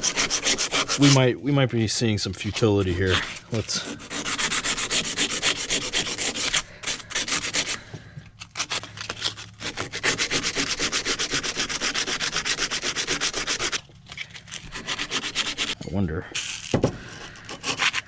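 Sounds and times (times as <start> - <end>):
sandpaper rubbing on steel: 0.0 - 1.3, 2.4 - 7.8, 8.6 - 13.8, 14.6 - 15.8, 17.4 - 18.0.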